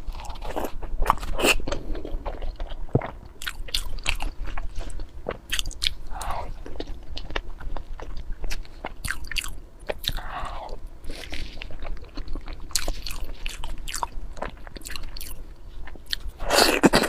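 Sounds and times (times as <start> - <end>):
person chewing food: 0.0 - 17.0.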